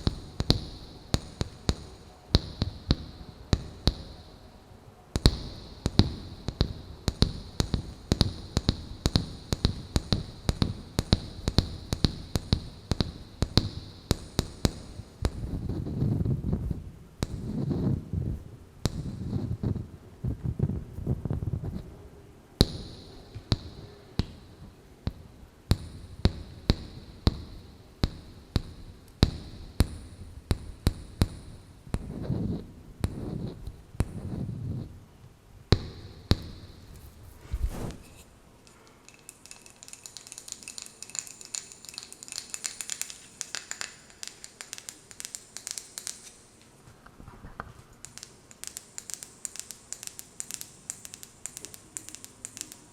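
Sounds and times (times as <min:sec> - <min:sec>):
nails tapping on wooden lid: 0:38.7 - 0:46.4, 0:48.0 - 0:52.9.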